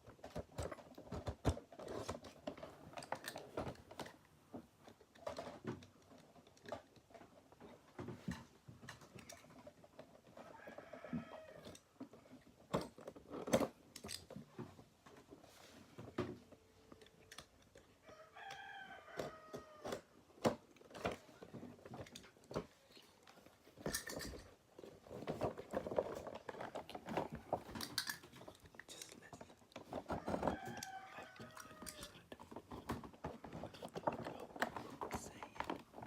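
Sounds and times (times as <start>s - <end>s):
packaging clicks and rustling: 16.3s - 36.0s.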